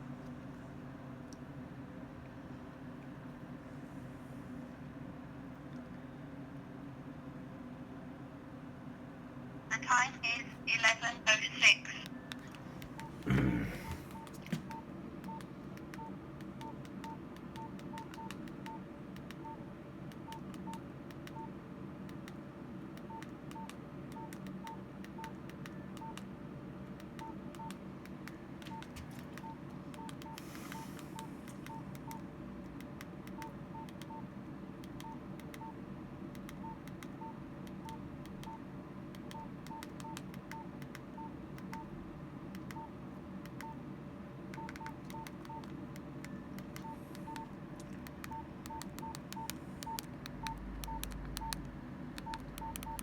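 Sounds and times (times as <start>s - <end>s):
keypad beeps: 13.8s - 21.6s, 23.0s - 26.3s, 27.0s - 32.2s, 33.3s - 35.8s, 36.4s - 38.6s, 39.2s - 41.9s, 42.6s - 43.8s, 44.5s - 53.0s
key clicks: 44.6s - 53.0s.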